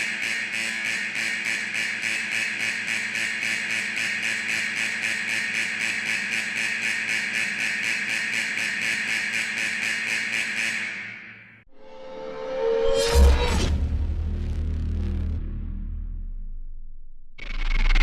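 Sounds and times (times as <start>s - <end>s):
factory alarm ringing: 0.0s - 13.5s.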